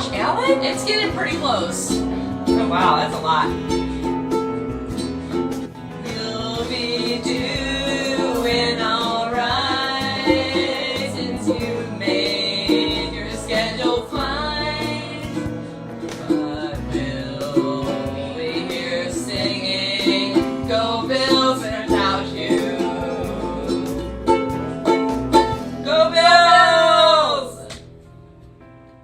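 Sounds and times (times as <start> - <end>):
country guitar music: 0.0 - 28.8
wordless singing: 5.8 - 24.5, 25.8 - 27.8.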